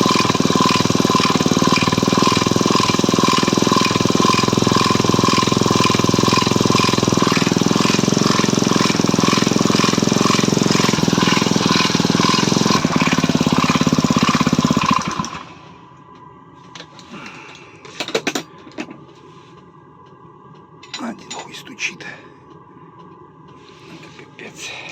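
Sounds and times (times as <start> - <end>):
regular engine knock: 0.0 - 15.4
snowmobile engine running: 0.0 - 15.5.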